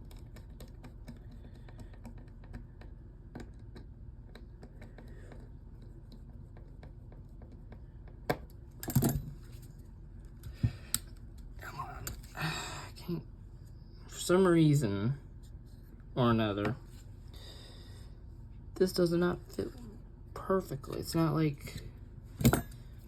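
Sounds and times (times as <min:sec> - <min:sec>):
small parts clicking and tapping: 0:00.0 - 0:09.3
parts clattering: 0:20.9 - 0:23.0.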